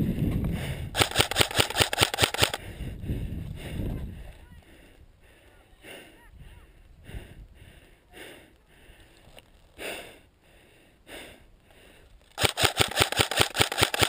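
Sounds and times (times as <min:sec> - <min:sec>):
heavy breathing: 0:00.0 - 0:01.1, 0:02.5 - 0:12.3
airsoft gun rapid fire: 0:01.0 - 0:02.6, 0:12.4 - 0:14.0.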